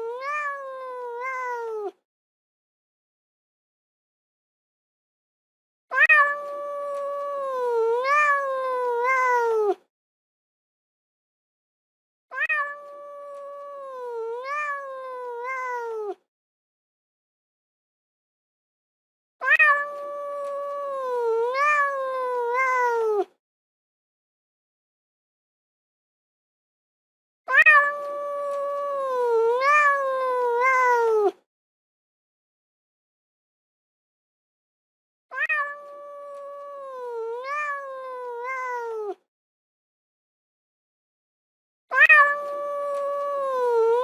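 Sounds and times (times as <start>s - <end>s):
cat meowing: 0.0s - 2.0s, 5.9s - 9.8s, 12.3s - 16.2s, 19.4s - 23.3s, 27.5s - 31.4s, 35.3s - 39.2s, 41.9s - 44.0s.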